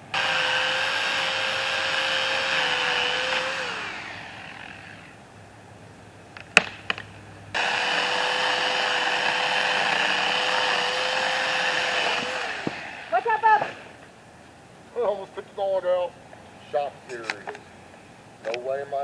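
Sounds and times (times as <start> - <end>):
electric drill whining: 0.1 - 5.2, 7.6 - 13.2.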